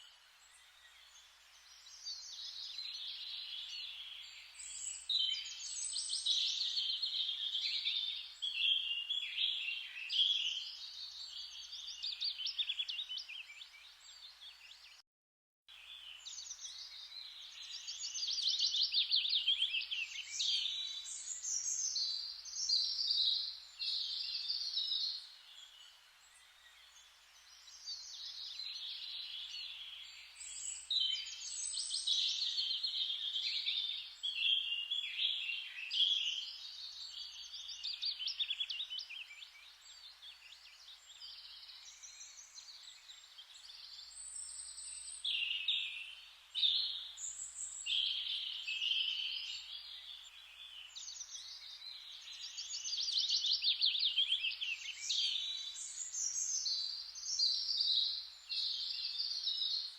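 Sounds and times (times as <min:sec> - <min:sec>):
faint steady hiss: 0:00.0 - 0:15.0, 0:15.7 - 0:59.9
songbirds chirping and trilling: 0:00.0 - 0:15.0, 0:15.7 - 0:59.9.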